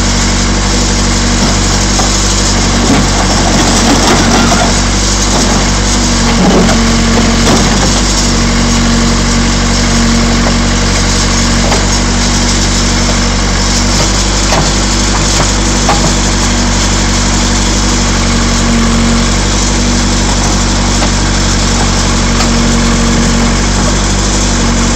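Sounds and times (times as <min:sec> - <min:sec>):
diesel engine running: 0:00.0 - 0:24.9
sheet metal crunching: 0:01.1 - 0:08.4.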